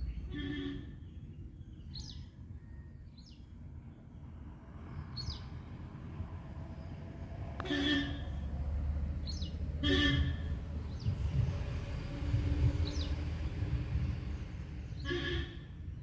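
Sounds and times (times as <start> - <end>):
bird chirping: 0.0 - 3.5, 9.2 - 9.6
low outdoor rumble: 0.0 - 16.0.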